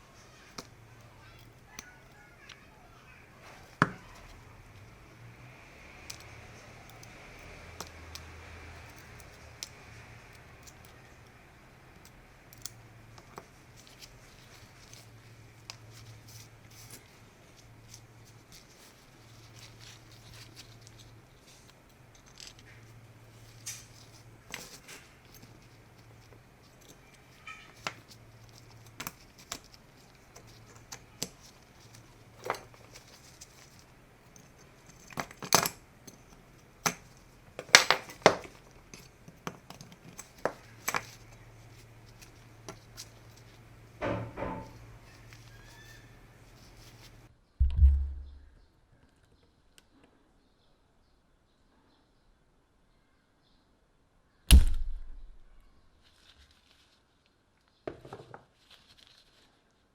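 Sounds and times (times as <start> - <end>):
small clicks and handling noises: 0.0 - 47.3
faint low hum: 0.0 - 57.8.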